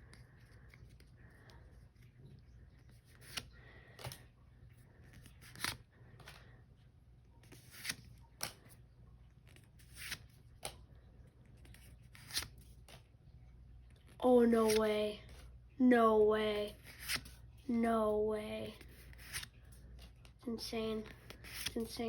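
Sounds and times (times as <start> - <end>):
trading cards sliding and snapping: 2.8 - 4.3, 5.0 - 6.4, 7.4 - 8.8, 9.4 - 10.8, 11.5 - 13.1, 14.6 - 14.9, 16.9 - 17.4, 18.8 - 20.4, 21.1 - 21.9.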